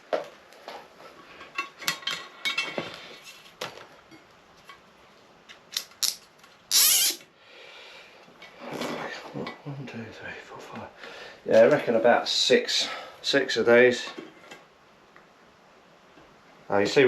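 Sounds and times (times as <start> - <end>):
cable ties ratcheting tight: 5.7 - 7.2.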